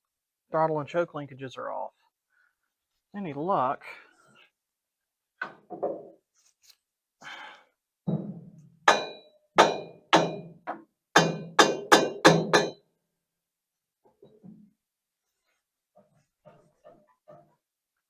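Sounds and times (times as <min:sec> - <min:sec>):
ringing taps on metal: 0:08.9 - 0:12.8.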